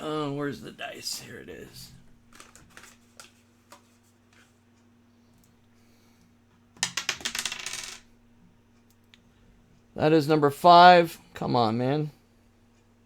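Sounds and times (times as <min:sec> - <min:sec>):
die clattering on a table: 0:06.8 - 0:08.1.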